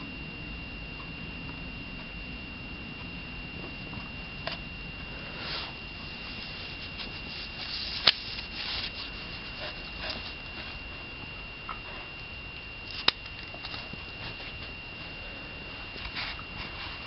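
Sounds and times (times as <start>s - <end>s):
faint high whine: 0.0s - 17.0s
quiet rubbing and scratching: 3.9s - 12.2s, 12.9s - 17.0s.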